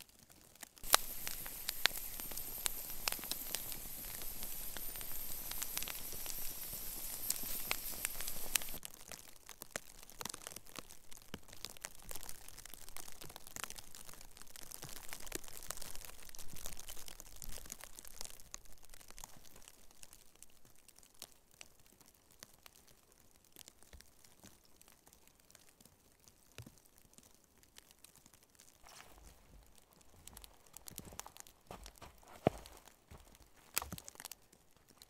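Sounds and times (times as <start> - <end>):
crunching and crackling handling: 0.0 - 22.0, 26.6 - 35.0
faint clicks and snaps: 0.6 - 13.8.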